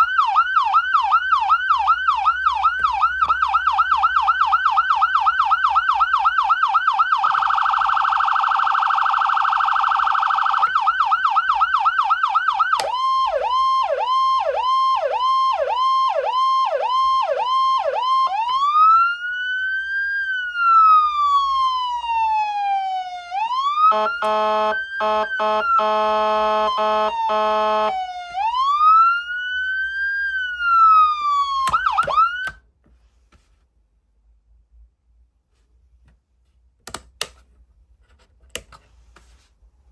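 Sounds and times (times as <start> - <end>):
electronic siren cycling tones: 0.0 - 32.6
air horn blast: 23.9 - 27.9.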